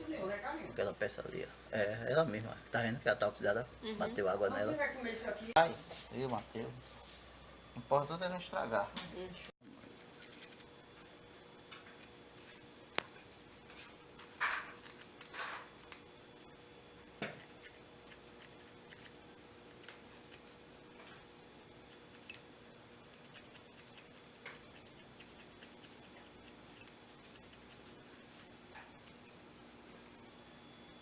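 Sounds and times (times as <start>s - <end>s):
faint steady hum: 0.0s - 31.0s
small clicks and scrapes: 9.7s - 16.1s, 17.2s - 29.3s.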